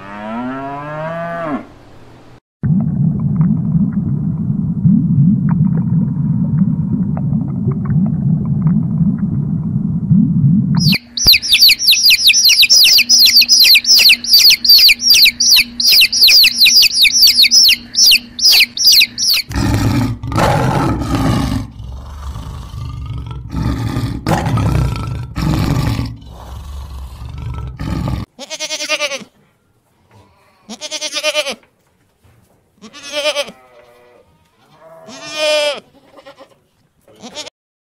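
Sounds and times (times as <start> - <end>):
low rumbling animal call: 4.8 - 28.3
rapid high-pitched chirping: 10.8 - 19.6
harsh low animal calls: 10.8 - 28.3
goat bleating: 28.3 - 29.4, 30.4 - 31.6, 32.8 - 37.5.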